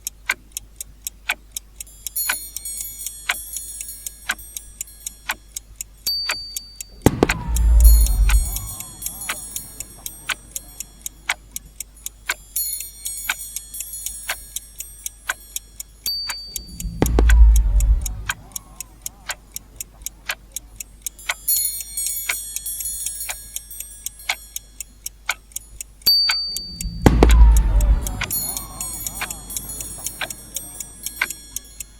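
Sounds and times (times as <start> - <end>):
clock ticking: 0.0 - 31.9
deep boom: 7.1 - 9.3, 16.8 - 18.3, 26.9 - 28.5
shimmering high chime: 7.4 - 11.0, 28.0 - 31.9.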